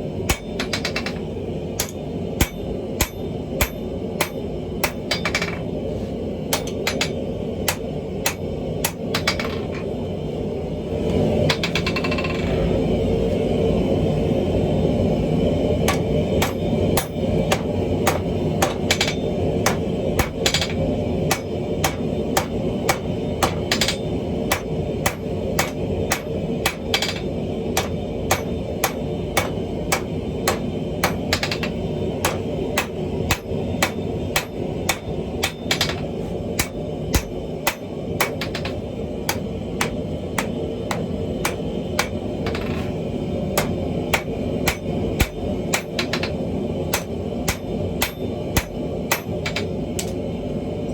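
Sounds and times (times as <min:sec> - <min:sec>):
steady low rumble: 0:00.0 - 0:50.9
hammer blows on an anvil: 0:01.8 - 0:05.6, 0:15.9 - 0:42.8, 0:43.6 - 0:50.1.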